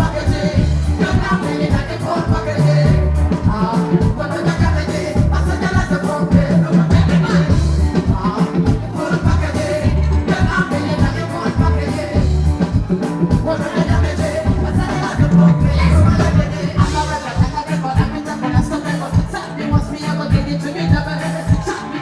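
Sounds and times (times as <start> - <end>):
bass and drum beat: 0.0 - 22.0
woman singing: 0.0 - 22.0.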